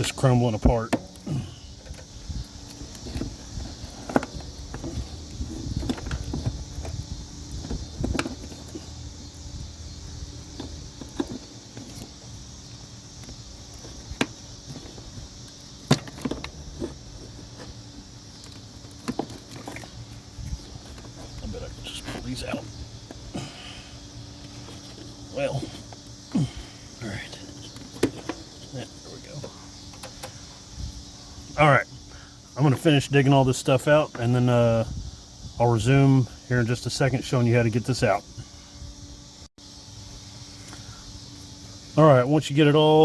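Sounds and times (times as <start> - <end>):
handling noise: 0.2 - 31.5.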